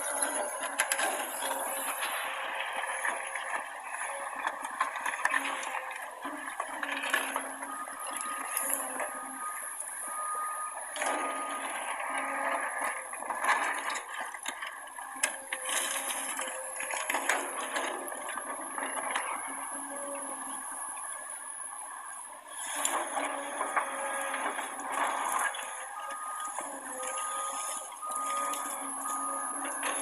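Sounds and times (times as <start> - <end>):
heavy earthmoving machinery: 0.0 - 30.0.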